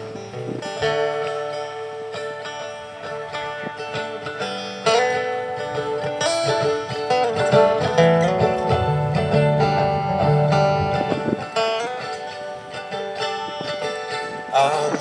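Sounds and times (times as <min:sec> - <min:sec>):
plucked strings melody: 0:00.0 - 0:15.0
low bass notes: 0:07.3 - 0:11.4.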